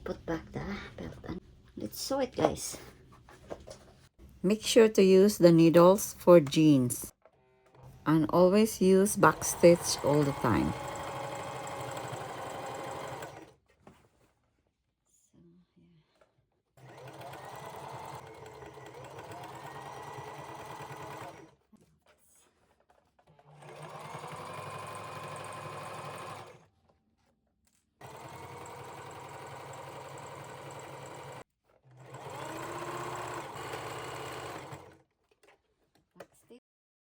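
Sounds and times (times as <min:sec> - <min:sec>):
electric sewing machine stitching: 0:06.4 - 0:13.6, 0:16.8 - 0:21.7, 0:22.7 - 0:26.7, 0:28.0 - 0:35.0.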